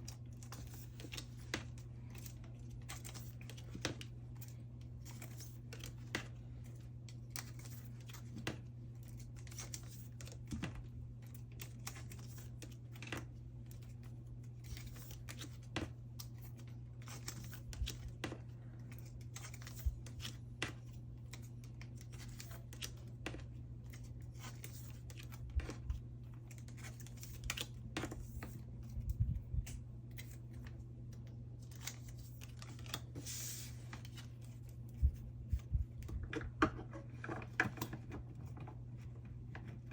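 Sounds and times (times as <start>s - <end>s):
steady low hum: 0.0s - 39.9s.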